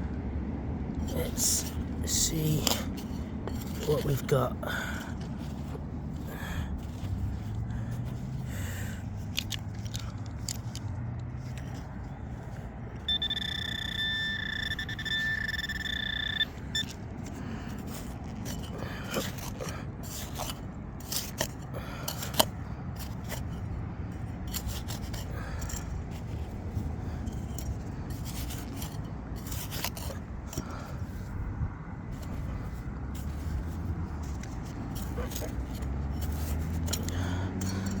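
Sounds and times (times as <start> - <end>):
clicks and scrapes: 1.0 - 38.0
soil scraping and sifting: 1.0 - 38.0
pinpointer steady high tone: 13.0 - 17.0.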